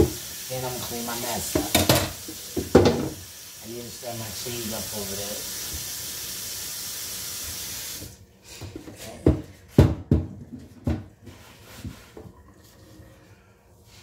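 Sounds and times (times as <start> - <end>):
kitchen tap running: 0.0 - 9.4
kitchenware knocks and clatters: 1.4 - 3.2, 8.6 - 11.2.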